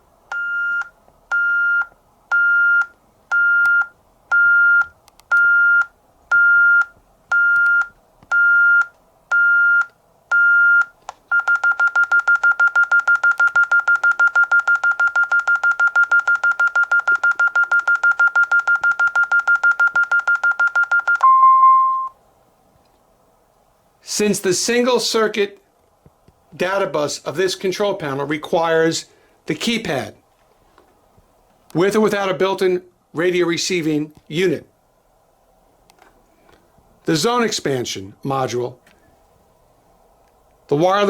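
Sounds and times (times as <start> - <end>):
alarm keypad beeping: 0.3 - 22.1.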